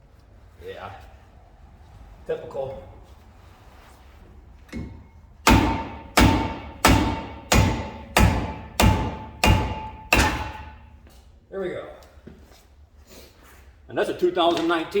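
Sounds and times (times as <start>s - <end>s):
hammer striking metal rotor: 5.4s - 10.9s.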